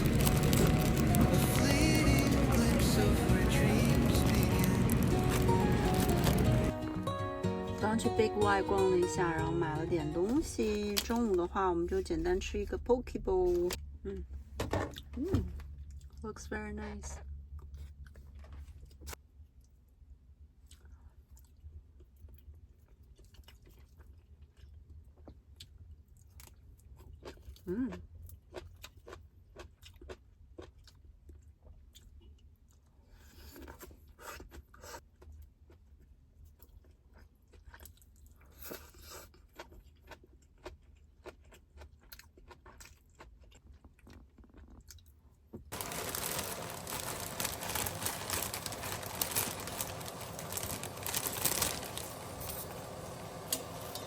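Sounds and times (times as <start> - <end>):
chewing and crunching food: 0.0 - 6.7, 14.9 - 54.0
small clicks and crackles: 0.0 - 6.7, 45.7 - 54.0.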